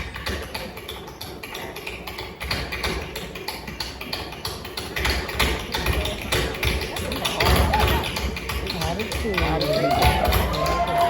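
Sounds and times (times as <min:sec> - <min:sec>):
tap shoes on wooden stage: 0:00.0 - 0:11.0.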